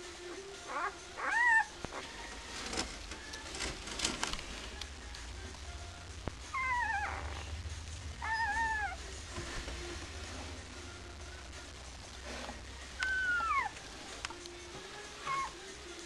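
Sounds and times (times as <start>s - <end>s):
puppy crying in high squeals: 0.7s - 1.7s, 6.5s - 7.3s, 8.2s - 9.0s.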